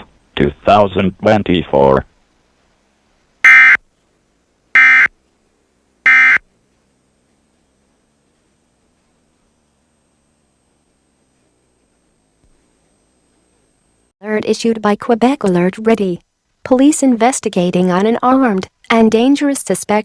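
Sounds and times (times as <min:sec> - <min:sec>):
faint steady hiss: 0:00.0 - 0:14.2, 0:15.1 - 0:20.0
electronic data bursts: 0:03.4 - 0:03.8, 0:04.8 - 0:05.1, 0:06.1 - 0:06.4
thin high whine: 0:04.8 - 0:05.1, 0:06.0 - 0:06.4.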